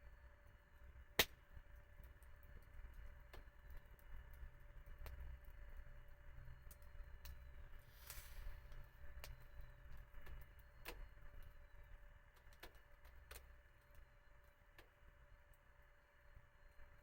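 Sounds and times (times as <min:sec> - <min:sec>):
low steady rumble: 0:00.0 - 0:17.0
wood fire crackling: 0:06.6 - 0:09.6.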